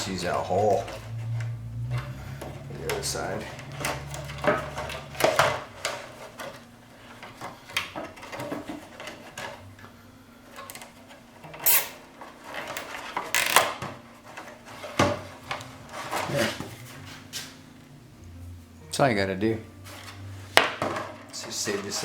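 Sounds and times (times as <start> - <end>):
plastic clicking and rattling: 0.8 - 9.6, 10.5 - 15.7
zip ties zipping tight: 11.6 - 12.0.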